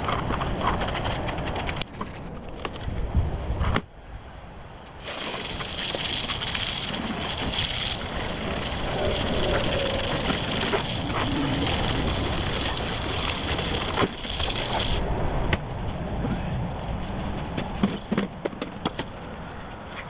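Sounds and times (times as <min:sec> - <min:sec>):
water spraying hiss: 0:05.0 - 0:15.0.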